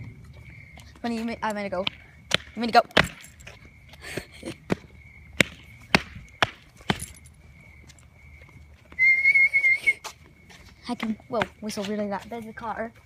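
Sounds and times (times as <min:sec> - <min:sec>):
footsteps on a hard path: 0:00.0 - 0:13.0
person whistling: 0:09.0 - 0:10.1.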